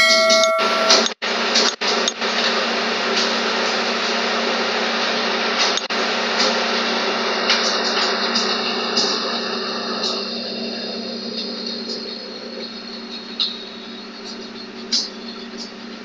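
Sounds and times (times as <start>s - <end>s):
steady machine hum and hiss: 1.3s - 16.0s.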